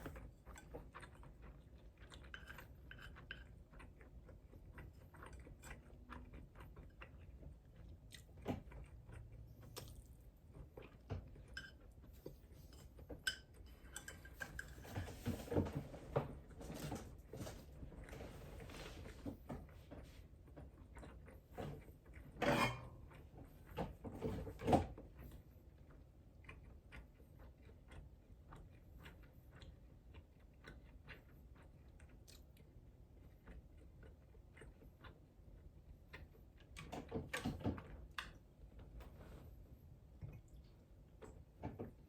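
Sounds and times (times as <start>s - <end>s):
soft chewing: 0.0s - 42.0s.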